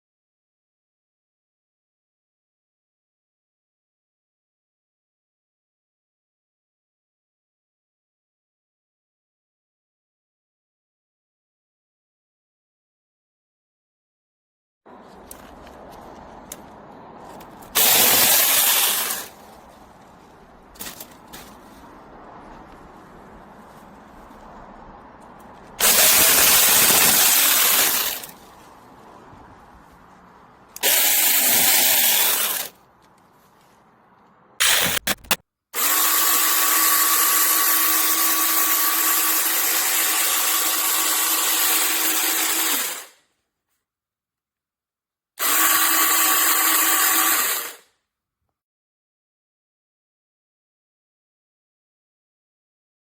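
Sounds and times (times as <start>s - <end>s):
cordless chainsaw motor whine: 17.7s - 19.5s, 25.8s - 28.5s, 30.8s - 32.8s, 35.8s - 43.1s, 45.4s - 47.8s.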